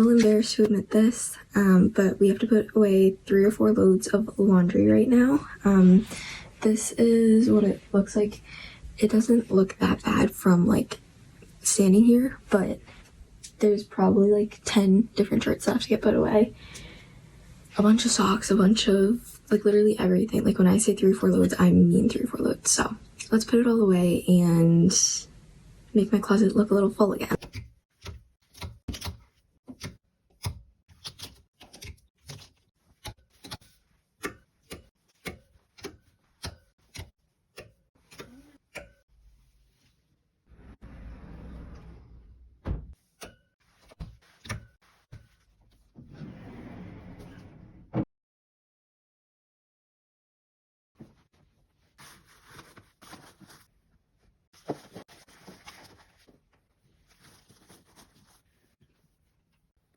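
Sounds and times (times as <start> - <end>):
clothing rustling: 51.0 - 59.6.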